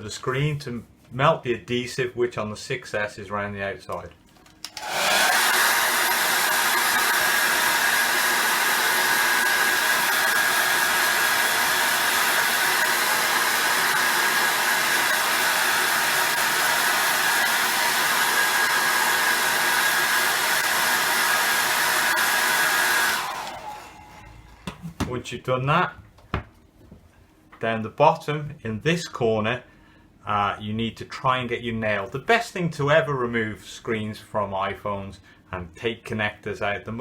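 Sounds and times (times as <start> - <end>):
hot-air blower running: 4.6 - 25.1.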